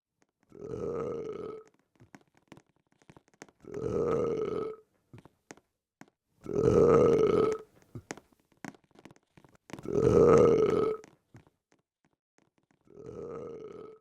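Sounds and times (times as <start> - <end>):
person burping: 0.5 - 1.7, 3.6 - 4.9, 6.4 - 7.7, 9.8 - 11.1, 12.9 - 14.0.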